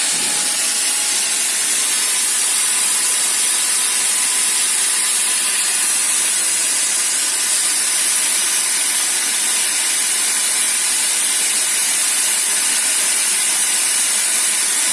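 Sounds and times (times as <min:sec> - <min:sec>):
plasma cutter hissing: 0:00.0 - 0:14.9.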